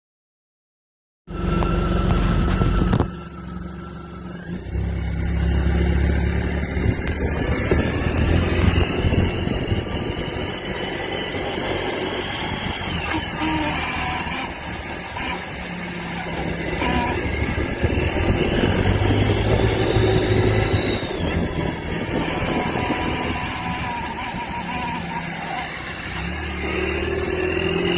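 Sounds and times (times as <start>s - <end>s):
scooter engine running: 1.3s - 27.9s
drive belt rubbing: 6.8s - 27.9s.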